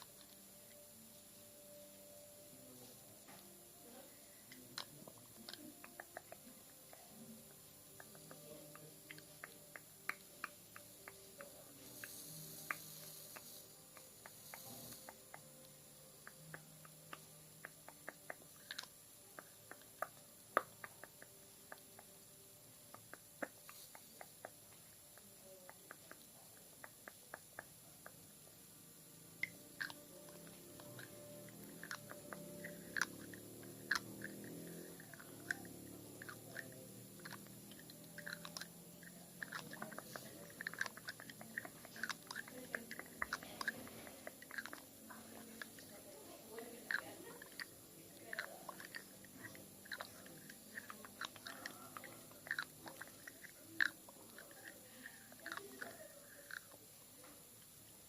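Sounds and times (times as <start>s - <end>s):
small sharp tapping ticks: 8.0s - 22.2s.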